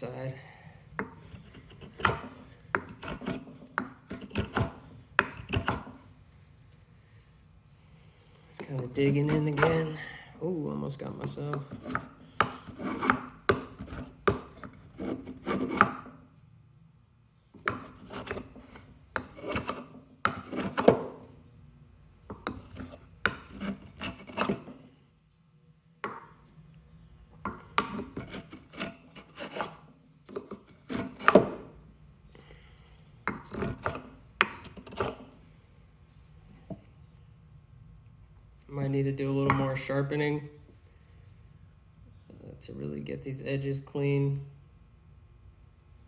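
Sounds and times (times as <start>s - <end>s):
hand plane shaving wood: 4.1s - 5.9s, 11.7s - 14.2s, 14.9s - 16.0s, 17.8s - 21.1s, 22.4s - 24.7s, 27.8s - 29.8s, 30.7s - 31.6s.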